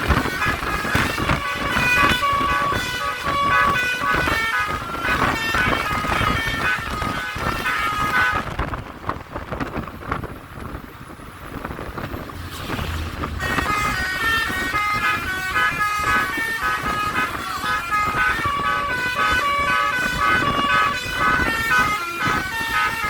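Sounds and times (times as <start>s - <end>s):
multi-tone air horn melody: 0.0s - 8.7s, 13.4s - 23.0s
road noise: 0.0s - 23.0s.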